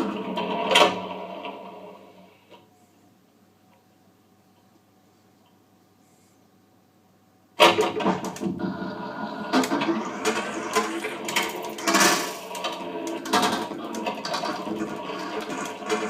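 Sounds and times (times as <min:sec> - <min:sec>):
tape hiss: 0:00.0 - 0:16.0
layered tape drones: 0:07.6 - 0:16.0.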